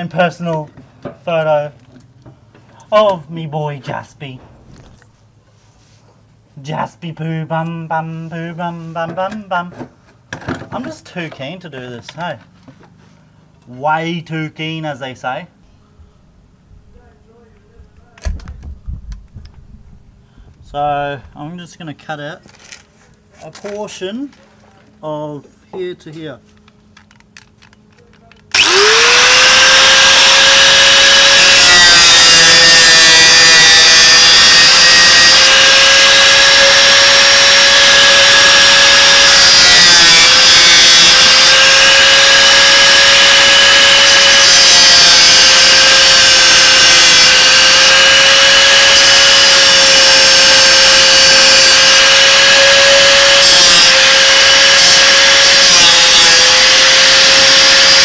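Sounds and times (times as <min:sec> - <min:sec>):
angle grinder cutting metal: 0:28.5 - 0:58.0.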